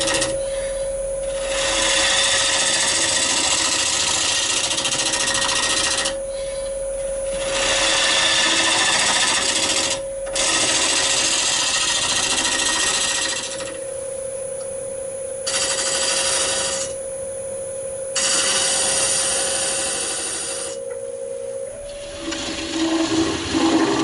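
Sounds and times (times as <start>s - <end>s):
wood lathe whine: 0.0s - 17.2s, 18.1s - 21.0s, 21.6s - 24.0s
turning tool cutting hiss: 15.5s - 17.0s, 18.2s - 20.8s, 21.9s - 24.0s.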